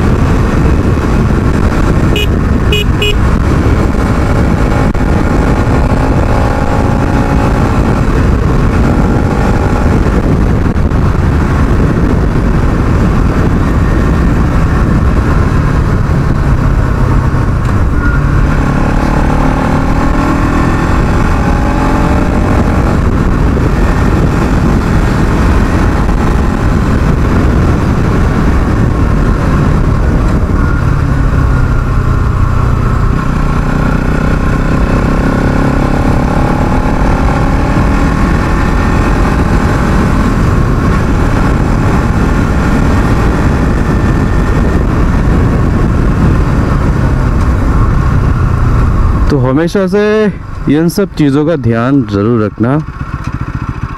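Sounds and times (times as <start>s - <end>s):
motorcycle engine accelerating: 0.0s - 53.9s.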